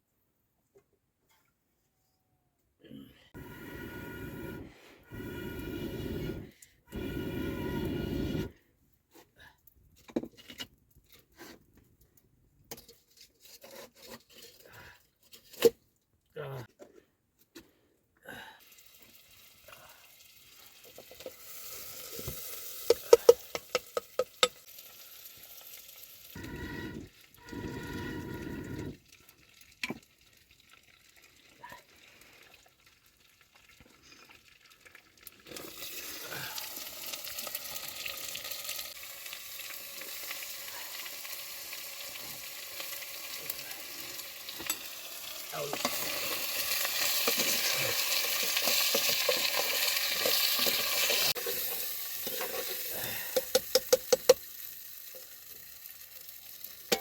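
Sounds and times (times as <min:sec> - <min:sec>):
food sizzling in a pan: 0:18.8 - 0:26.8, 0:35.6 - 0:57.0.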